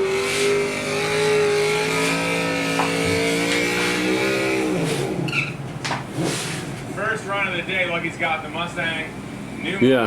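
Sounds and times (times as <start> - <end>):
car engine at full throttle: 0.0 - 5.3.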